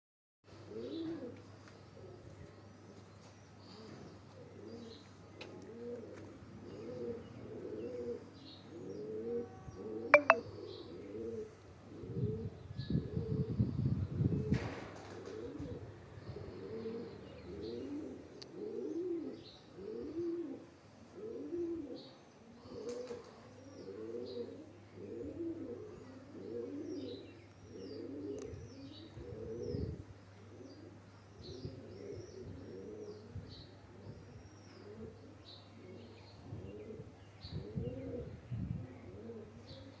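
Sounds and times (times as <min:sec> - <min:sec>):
pigeons cooing: 0:00.5 - 0:02.4, 0:03.6 - 0:40.0
bird chirping: 0:10.2 - 0:10.4.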